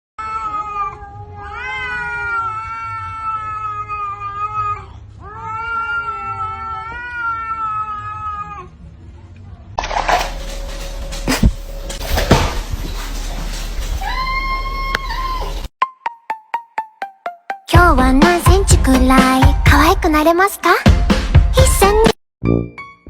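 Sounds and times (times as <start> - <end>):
cat yowling: 0.2 - 8.8, 14.0 - 15.7.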